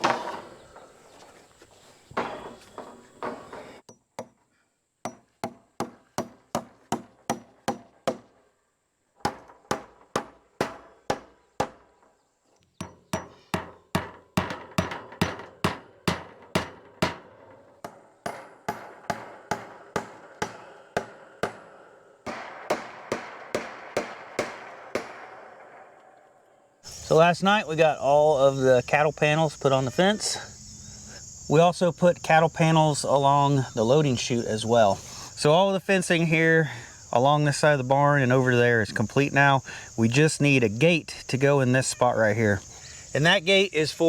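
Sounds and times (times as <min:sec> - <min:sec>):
hammer striking staples: 0:09.2 - 0:11.8, 0:12.8 - 0:25.4.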